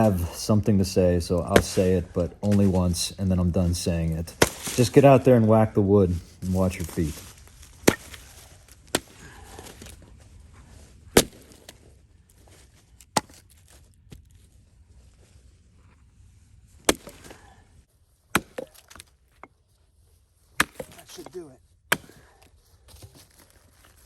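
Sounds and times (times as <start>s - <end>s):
axe chopping wood: 1.4s - 2.8s, 4.3s - 5.2s, 7.6s - 9.9s, 11.1s - 11.8s, 13.1s - 13.7s, 16.8s - 17.4s, 18.3s - 19.2s, 20.6s - 22.5s.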